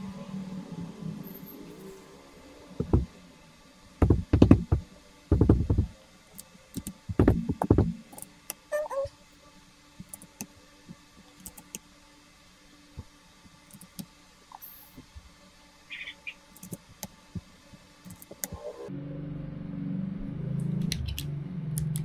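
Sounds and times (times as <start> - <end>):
keyboard knocking on desk: 4.0 - 5.8.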